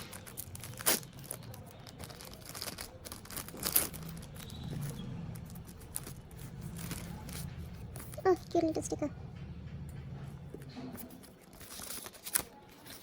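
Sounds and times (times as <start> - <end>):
packaging crackling: 0.0 - 8.2, 11.3 - 13.0
paper and plastic crinkling: 0.0 - 8.6, 10.9 - 13.0.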